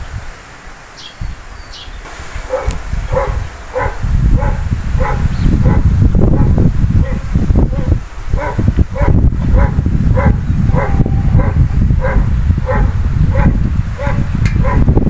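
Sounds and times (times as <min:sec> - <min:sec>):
strong wind buffeting microphone: 0:00.0 - 0:15.0
dog barking: 0:02.4 - 0:14.9.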